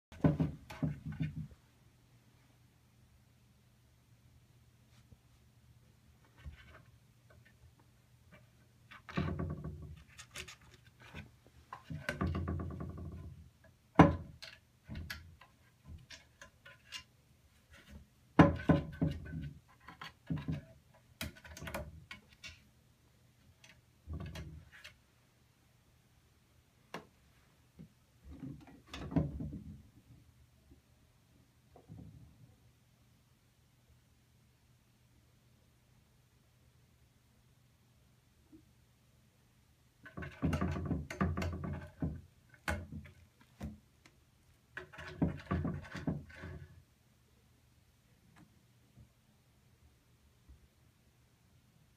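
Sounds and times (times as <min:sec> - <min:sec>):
cat knocking and scuffling: 0:00.1 - 0:01.6, 0:08.4 - 0:22.6, 0:23.6 - 0:25.0, 0:28.2 - 0:30.0, 0:40.0 - 0:43.9, 0:44.7 - 0:46.7.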